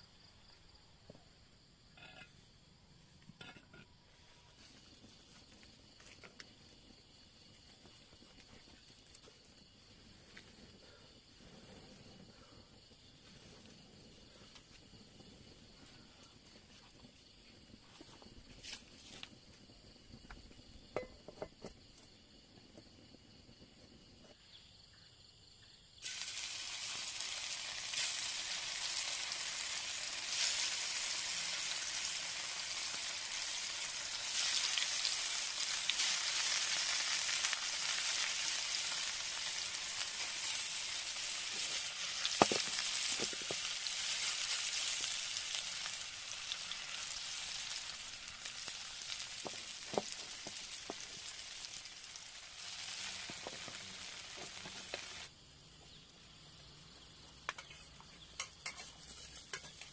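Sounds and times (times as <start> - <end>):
food sizzling in hot oil: 13.3 - 22.2, 26.0 - 55.3, 57.3 - 59.9.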